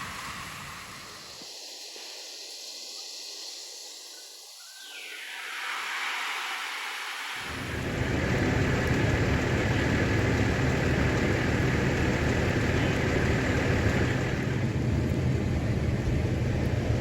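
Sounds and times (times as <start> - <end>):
vehicle engine running: 7.4 - 17.0.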